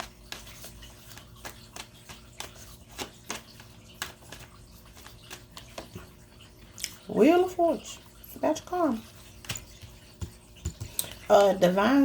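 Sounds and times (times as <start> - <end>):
cards clicking and snapping: 0.0 - 5.9.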